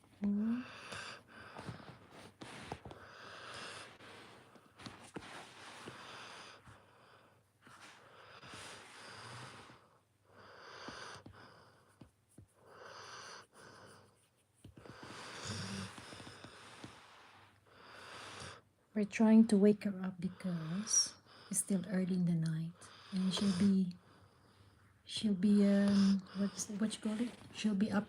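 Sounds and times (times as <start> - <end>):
puppy snoring wheezy breaths: 0.4 - 18.7, 20.0 - 22.0, 22.7 - 28.0.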